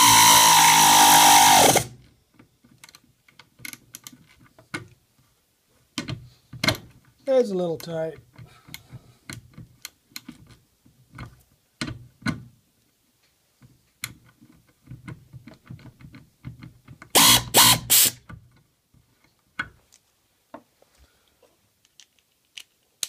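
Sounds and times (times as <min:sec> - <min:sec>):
loud tool pulses: 0:00.0 - 0:01.9, 0:17.2 - 0:18.2.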